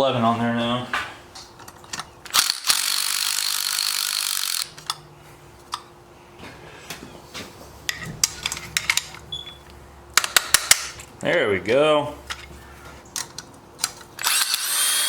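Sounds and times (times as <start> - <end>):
hand tools clicking and clinking: 7.9 - 9.2, 10.2 - 11.4.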